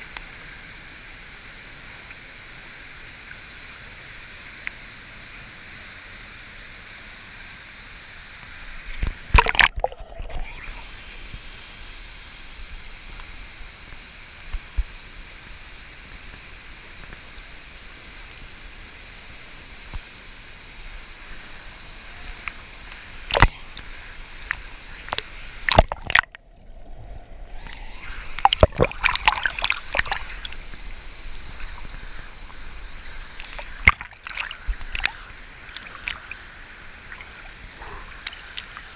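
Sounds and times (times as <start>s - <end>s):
water splashing: 9.0s - 11.1s, 22.2s - 38.9s.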